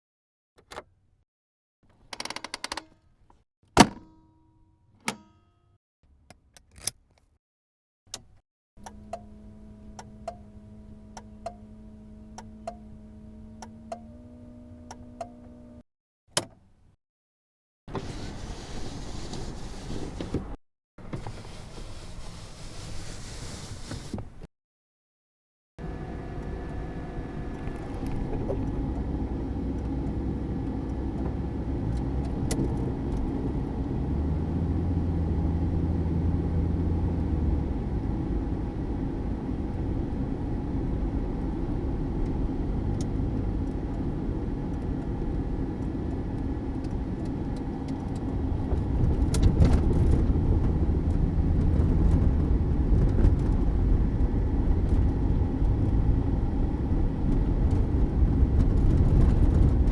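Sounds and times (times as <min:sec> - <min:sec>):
car engine rumbling: 0:08.2 - 0:15.8, 0:25.8 - 0:59.9.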